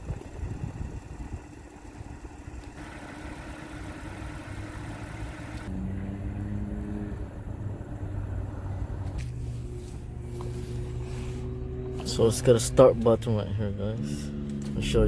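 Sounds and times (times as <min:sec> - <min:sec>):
vehicle engine rumble: 0:00.0 - 0:15.0.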